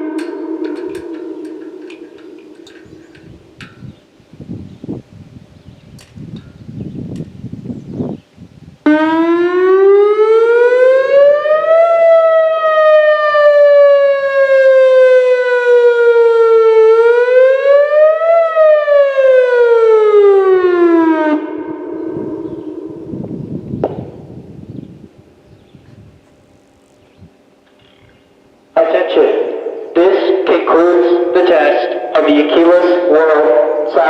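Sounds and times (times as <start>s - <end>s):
electronic siren wailing: 0.0s - 3.7s, 8.9s - 24.7s.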